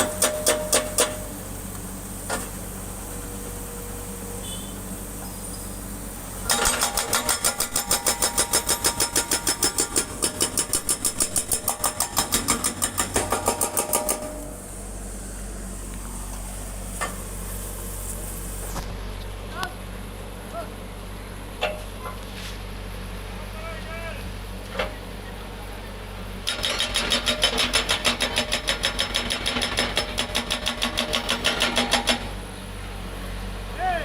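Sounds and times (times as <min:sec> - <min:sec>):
hydraulic breaker hammering: 0:00.0 - 0:01.3, 0:06.4 - 0:14.6, 0:26.4 - 0:32.4
machine engine hum: 0:08.2 - 0:26.5.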